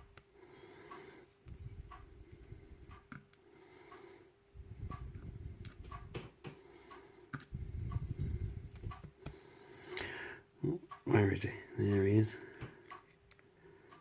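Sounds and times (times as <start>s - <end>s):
faint regular ticking: 0.0s - 14.0s.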